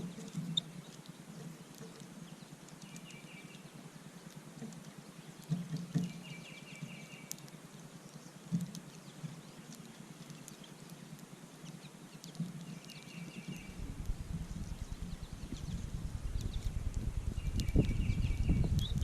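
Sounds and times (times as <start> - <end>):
faint clicks: 0.0 - 6.2, 6.8 - 15.0
low rumble: 13.7 - 19.0
songbird trilling: 14.5 - 19.0.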